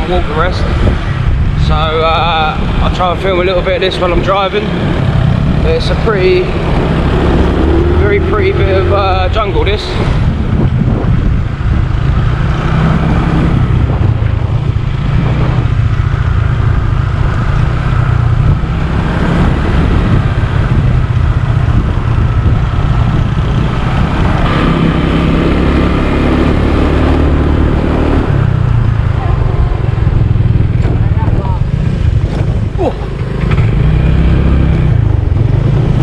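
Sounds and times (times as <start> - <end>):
wind noise on microphone: 0.0 - 36.0
motor scooter engine running: 10.3 - 36.0.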